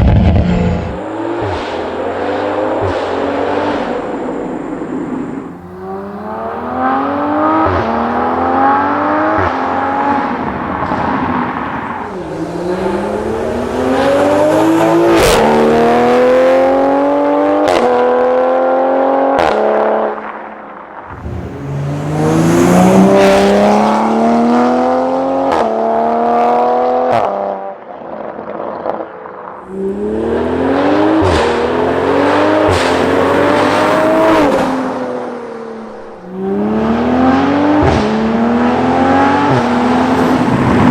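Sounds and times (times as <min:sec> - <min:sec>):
exhaust crack on upshift: 0:00.0 - 0:01.8
car engine accelerating hard: 0:00.0 - 0:20.0, 0:21.0 - 0:27.3, 0:29.6 - 0:40.9.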